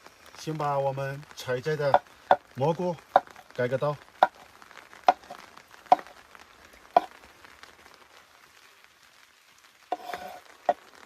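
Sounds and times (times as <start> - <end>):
faint rain pattering: 0.0 - 11.0
knife scraping board: 9.9 - 10.4.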